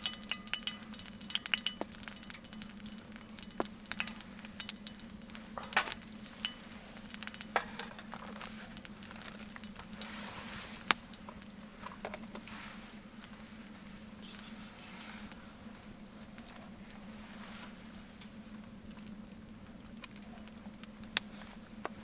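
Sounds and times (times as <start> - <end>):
fire popping and crackling: 0.0 - 22.0
meat sizzling on a fire: 0.0 - 22.0.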